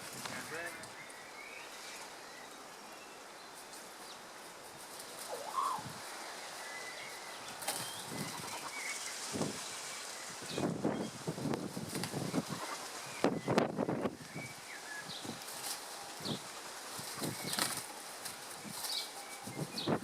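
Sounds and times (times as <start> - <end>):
high whistled bird notes: 5.3 - 5.9
loud bird call: 5.3 - 5.9
wings flapping: 7.5 - 9.6, 11.6 - 14.2, 15.2 - 19.8.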